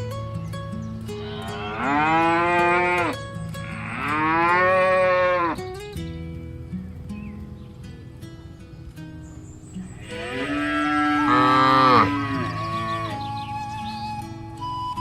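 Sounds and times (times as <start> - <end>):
cow mooing: 1.2 - 5.6, 10.0 - 13.2.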